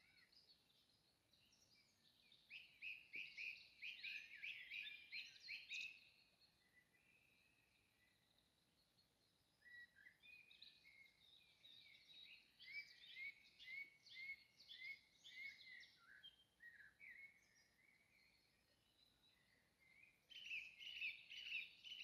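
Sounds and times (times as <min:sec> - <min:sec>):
faint birdsong chirps and trills: 0:00.0 - 0:22.0.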